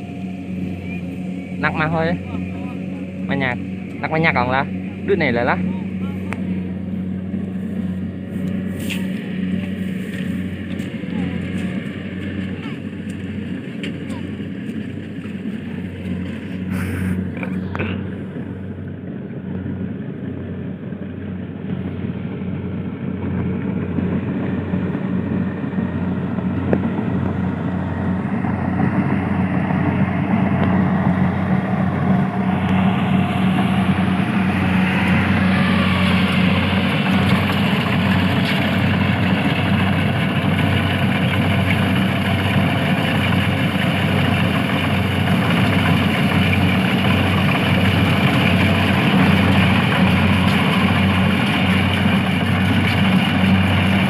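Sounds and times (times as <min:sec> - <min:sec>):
engine running: 0:00.0 - 0:54.0.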